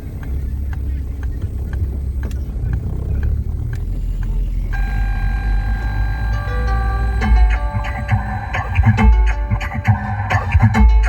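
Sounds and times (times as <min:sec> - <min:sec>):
light regular clicking: 0:00.0 - 0:04.4
car engine and road rumble: 0:00.0 - 0:11.0
music on car stereo: 0:00.0 - 0:11.0.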